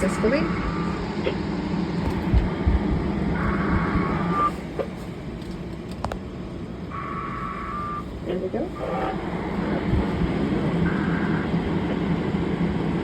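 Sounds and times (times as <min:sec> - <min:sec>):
electronic signalling tones: 0:00.0 - 0:01.4, 0:03.3 - 0:04.6, 0:06.9 - 0:10.0, 0:10.7 - 0:11.6
steady low hum: 0:00.0 - 0:13.0.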